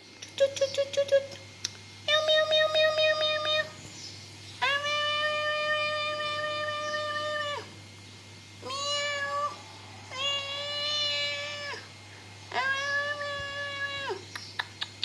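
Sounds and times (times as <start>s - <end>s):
cat meowing: 4.6s - 7.7s, 8.6s - 11.9s, 12.5s - 14.2s.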